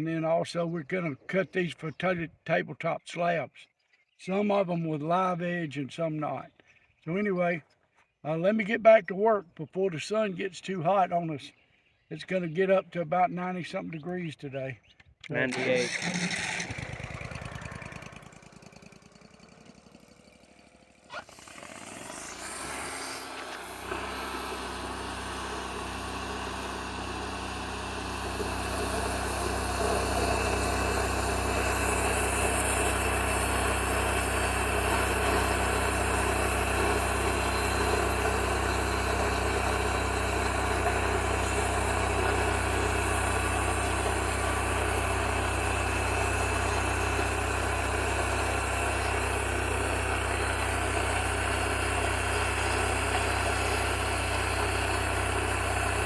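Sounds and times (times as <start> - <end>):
engine starting and running: 15.3 - 56.0.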